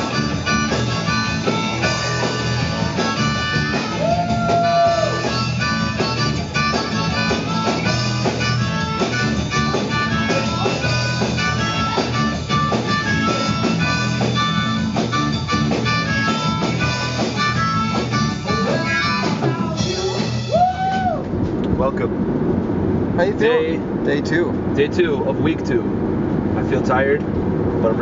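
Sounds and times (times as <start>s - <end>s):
harmonica lead: 0.0s - 20.5s
blues-rock music: 0.0s - 20.8s.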